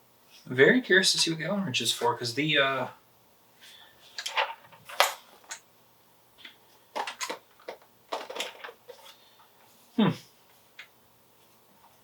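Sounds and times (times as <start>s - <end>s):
metal rifle parts clicking: 4.2s - 5.6s.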